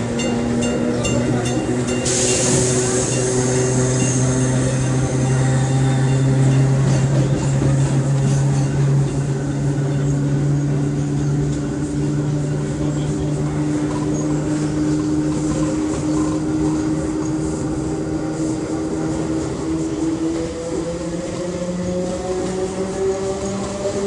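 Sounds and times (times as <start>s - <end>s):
electric train droning: 0.0s - 24.0s.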